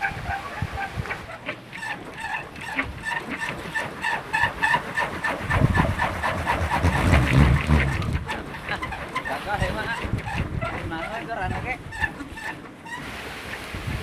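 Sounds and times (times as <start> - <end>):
wind rumbling on microphone: 0.0 - 1.4, 5.3 - 14.0
wind propeller whirring: 0.0 - 14.0.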